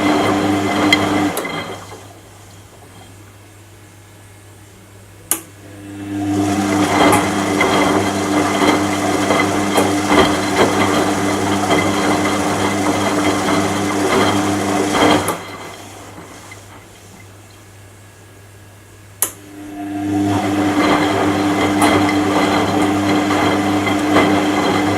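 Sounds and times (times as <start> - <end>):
washing machine motor whirring: 0.0 - 24.9
sharp click: 5.3 - 5.5, 19.2 - 19.4.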